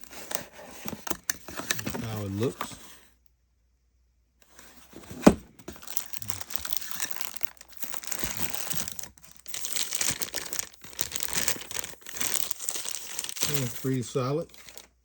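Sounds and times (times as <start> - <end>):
packaging crinkling and rustling: 0.0 - 2.9, 4.5 - 15.0.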